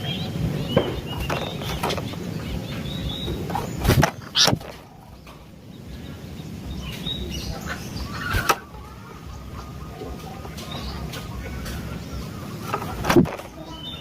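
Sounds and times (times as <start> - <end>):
bird call notes: 0.0 - 4.6.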